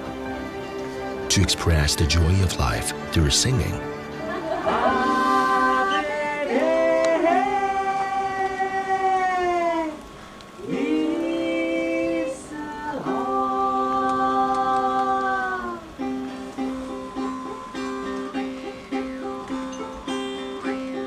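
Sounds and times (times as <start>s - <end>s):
plucked string instrument: 0.0s - 7.9s, 14.4s - 21.0s
person singing long held notes: 4.6s - 18.8s.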